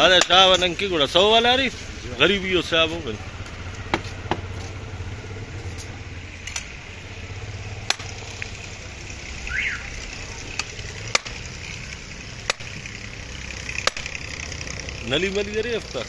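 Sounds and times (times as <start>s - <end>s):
low engine-like hum: 0.0s - 16.0s
sharp clicks and knocks: 3.4s - 4.7s, 5.7s - 6.8s, 7.8s - 8.6s, 10.5s - 13.0s, 13.7s - 14.3s.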